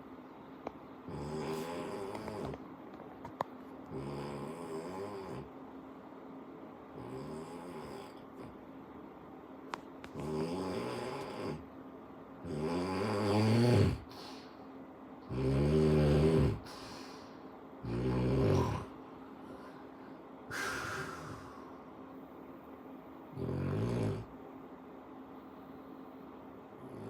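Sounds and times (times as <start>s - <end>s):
person snoring: 1.1s - 2.6s, 3.9s - 5.5s, 7.0s - 8.6s, 10.2s - 11.7s, 12.4s - 14.5s, 15.3s - 19.0s, 20.5s - 21.8s, 23.3s - 24.3s.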